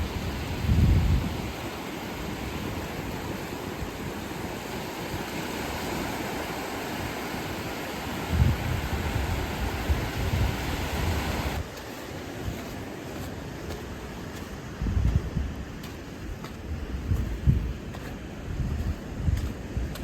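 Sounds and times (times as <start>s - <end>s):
wind buffeting microphone: 0.0s - 1.8s, 6.8s - 11.7s, 12.4s - 20.0s.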